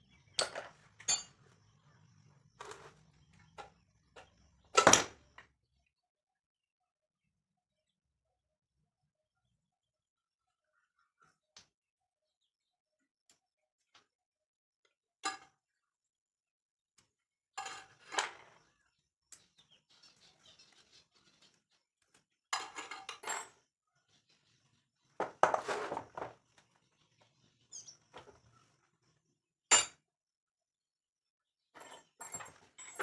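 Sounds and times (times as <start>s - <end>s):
metal tools clinking and clattering: 0.4s - 1.4s, 22.5s - 23.6s, 31.8s - 33.0s.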